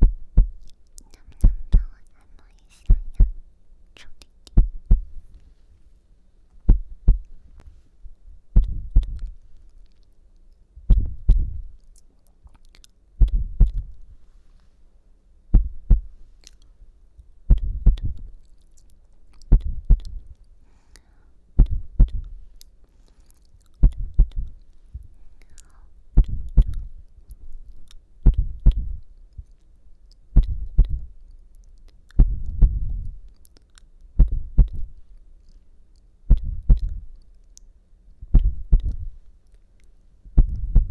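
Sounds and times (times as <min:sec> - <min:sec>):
heartbeat thumps: 0:00.0 - 0:00.6, 0:01.4 - 0:01.9, 0:02.9 - 0:03.4, 0:04.6 - 0:05.3, 0:06.6 - 0:07.6, 0:08.3 - 0:09.4, 0:10.8 - 0:11.7, 0:13.2 - 0:14.0, 0:15.5 - 0:16.2, 0:17.5 - 0:18.4, 0:19.5 - 0:20.3, 0:21.6 - 0:22.5, 0:23.8 - 0:24.6, 0:26.1 - 0:26.9, 0:28.2 - 0:29.1, 0:30.4 - 0:31.2, 0:32.2 - 0:33.2, 0:34.2 - 0:35.0, 0:36.3 - 0:37.1, 0:38.2 - 0:39.2, 0:40.3 - 0:40.9.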